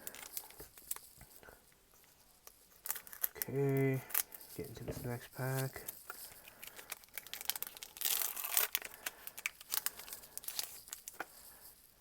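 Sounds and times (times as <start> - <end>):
foil wrapper crinkling and tearing: 0.0 - 1.3, 2.3 - 11.6.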